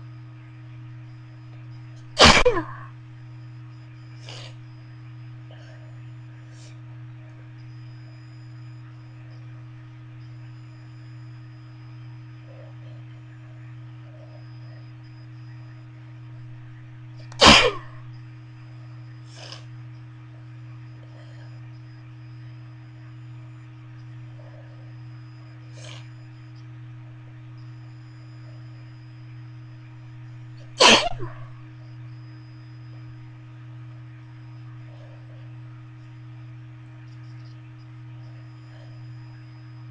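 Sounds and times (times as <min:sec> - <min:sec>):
steady low hum: 0:00.0 - 0:39.9
person sneezing: 0:02.2 - 0:02.9, 0:17.4 - 0:18.0, 0:30.8 - 0:31.5.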